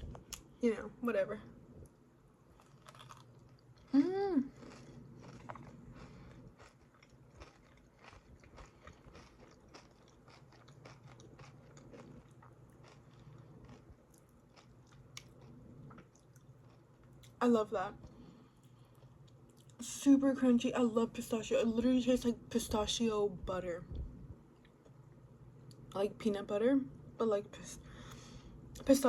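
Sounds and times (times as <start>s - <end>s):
crunchy chocolate chewing: 2.5s - 17.4s.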